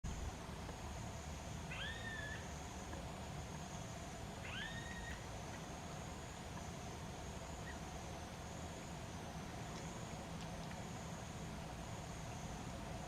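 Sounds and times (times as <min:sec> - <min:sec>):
steady background hum: 0:00.1 - 0:13.0.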